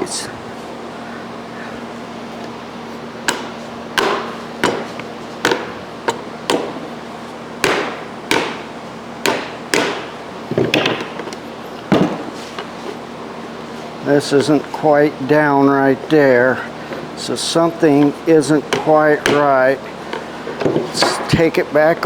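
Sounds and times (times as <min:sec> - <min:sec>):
sharp knocks on garbage disposal: 0:03.3 - 0:06.8, 0:07.6 - 0:11.3, 0:11.9 - 0:12.3, 0:18.7 - 0:19.6.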